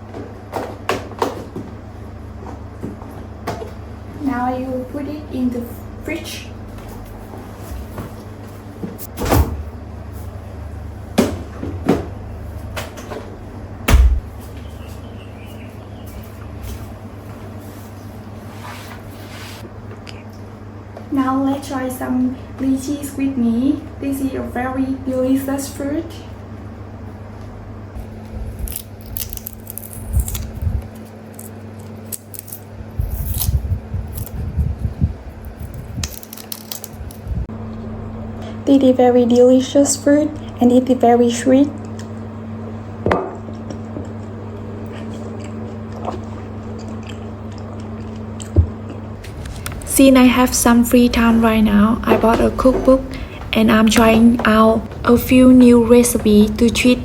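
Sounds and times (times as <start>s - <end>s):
steady low hum: 0.0s - 57.0s
refrigerator door thump: 9.2s - 9.7s, 13.8s - 14.4s
fruit shell cracking: 28.6s - 34.4s, 35.6s - 37.2s.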